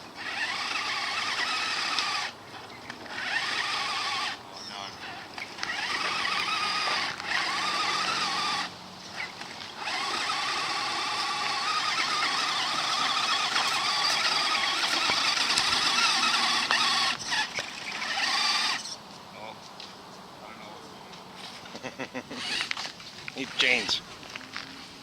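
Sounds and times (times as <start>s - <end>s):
small electric motor whining: 0.0s - 19.0s, 22.3s - 23.0s.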